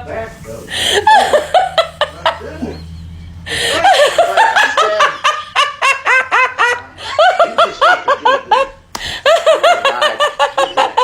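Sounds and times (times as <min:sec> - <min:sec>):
person wheezing laughter: 0:03.5 - 0:04.8.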